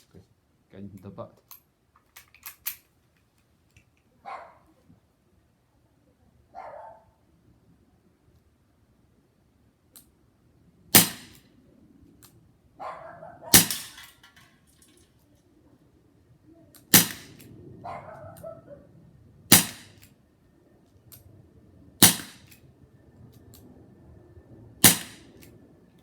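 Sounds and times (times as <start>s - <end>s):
air pistol shots: 10.9s - 11.4s, 13.5s - 14.2s, 16.8s - 17.5s, 19.5s - 20.1s, 22.0s - 22.6s, 24.8s - 25.5s.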